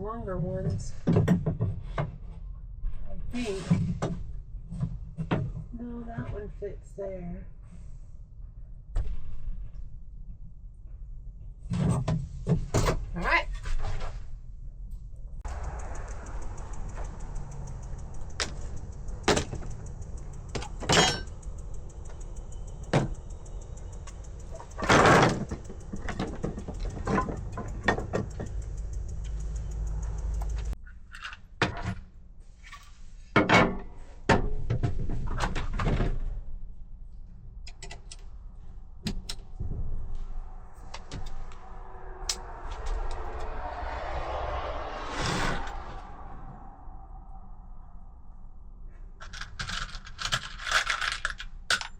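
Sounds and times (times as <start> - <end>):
low steady hum: 14.5 - 30.8, 36.5 - 51.9
parts knocking and rattling: 15.5 - 31.9, 49.2 - 51.9.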